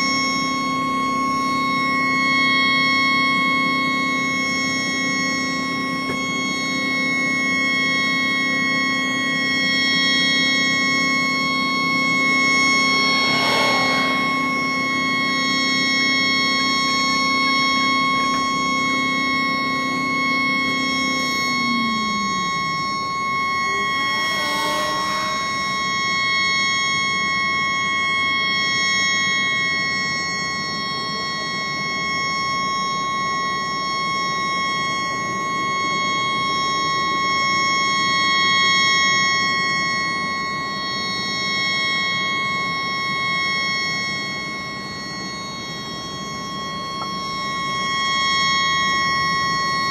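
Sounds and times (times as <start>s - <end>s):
low gliding tone: 10.9s - 17.5s
brief rushing sound: 12.4s - 16.0s.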